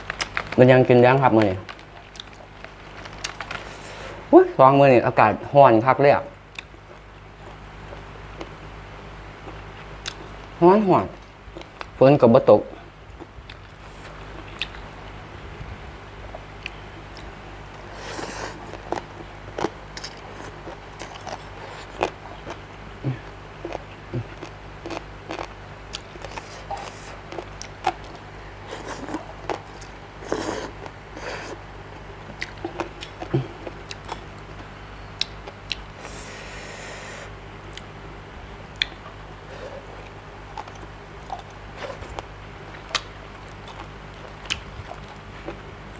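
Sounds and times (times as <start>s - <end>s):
person chewing food: 0.0s - 0.6s, 1.7s - 3.8s, 9.4s - 10.4s, 13.1s - 15.2s, 16.2s - 36.2s, 37.7s - 37.9s, 38.7s - 45.9s
low steady hum: 0.0s - 45.9s.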